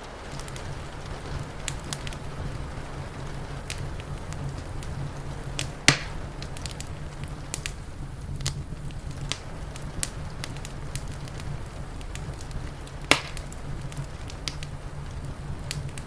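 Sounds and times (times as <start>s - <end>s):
low rumble: 0.0s - 16.0s
wood fire crackling: 0.0s - 16.0s
loud snap: 5.6s - 7.8s, 13.0s - 14.8s.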